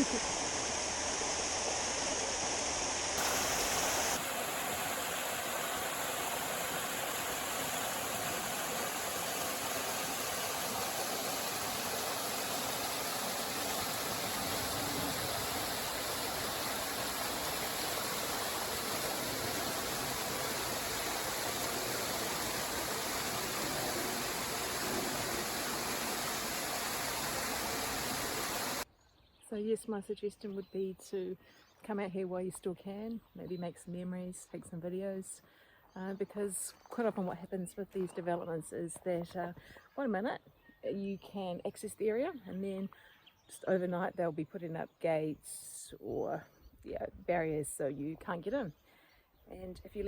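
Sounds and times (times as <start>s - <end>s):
waterfall splashing: 0.0s - 28.8s.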